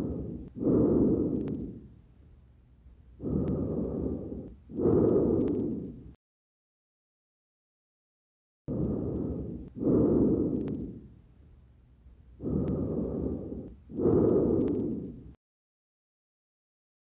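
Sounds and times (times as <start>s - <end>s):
sharp lung clicks: 0.0s - 1.8s, 3.2s - 6.0s, 12.4s - 15.2s
breathing through stethoscope: 0.0s - 2.0s, 3.2s - 6.2s, 8.7s - 11.2s, 12.4s - 15.4s.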